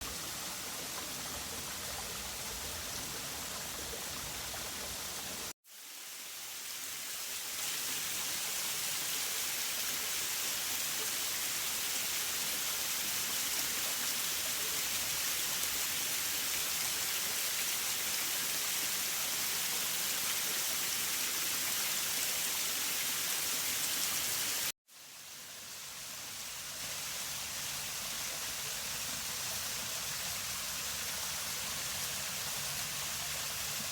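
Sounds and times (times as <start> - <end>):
waterfall rushing hiss: 0.1 - 33.9.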